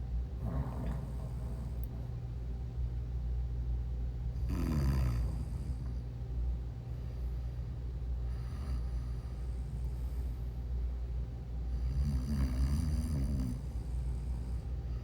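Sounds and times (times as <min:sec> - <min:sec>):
steady low hum: 0:00.0 - 0:15.0
woman snoring: 0:04.4 - 0:05.9, 0:11.8 - 0:13.7.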